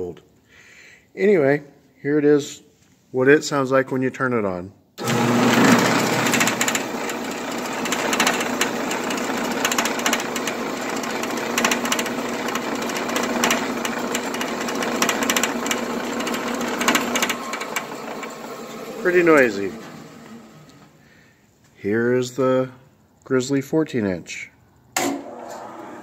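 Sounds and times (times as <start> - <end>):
band saw running: 5.0 - 20.9.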